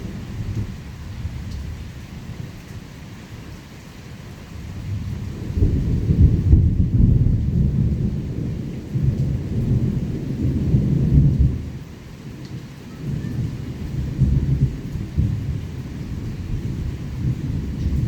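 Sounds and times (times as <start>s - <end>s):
steady rain: 0.0s - 18.0s
thunder rumbling: 4.6s - 11.8s, 12.9s - 18.0s.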